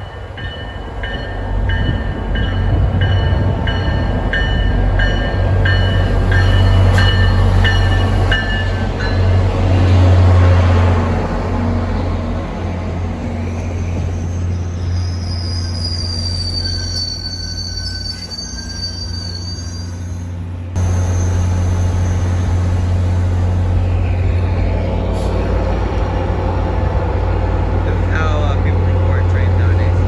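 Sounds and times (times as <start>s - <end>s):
train rumbling: 0.0s - 30.0s
wheels squealing: 13.0s - 25.5s.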